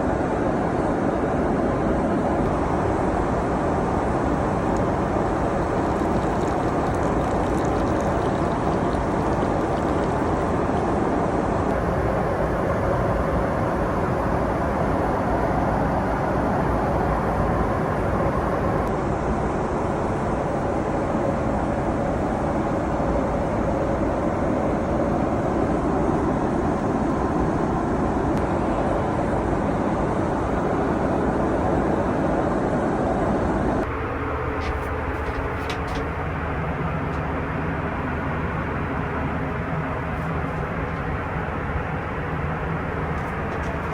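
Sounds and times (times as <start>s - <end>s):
jet cabin engine hum: 0.0s - 19.7s, 20.5s - 43.9s.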